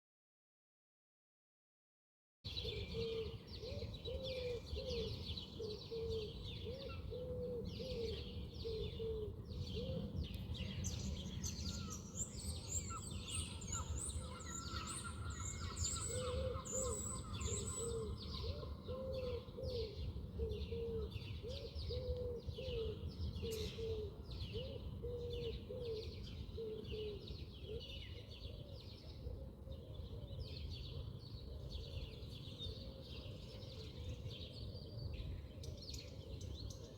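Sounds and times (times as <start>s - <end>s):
birds chirping: 10.6s - 20.0s.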